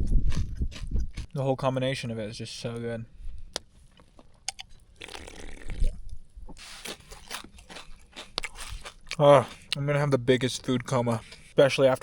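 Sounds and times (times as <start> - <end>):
person chewing crunchy food: 0.1 - 1.4, 3.5 - 9.8.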